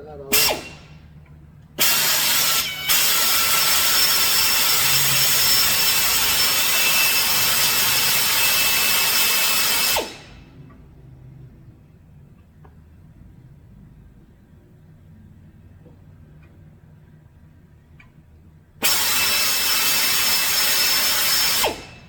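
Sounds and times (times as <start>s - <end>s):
die grinder hissing and whining: 1.8s - 10.4s, 18.8s - 22.0s.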